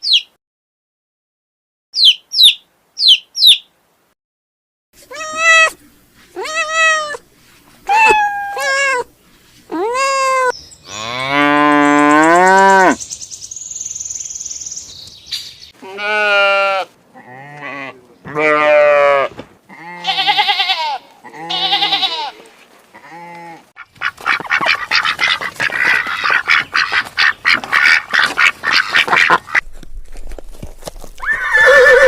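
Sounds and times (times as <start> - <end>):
small bird chirping: 0.0 - 0.3, 2.0 - 3.7, 10.4 - 15.8
cat meowing: 5.1 - 5.8, 6.4 - 7.2, 7.9 - 9.1, 9.7 - 10.5
cow mooing: 10.9 - 13.0.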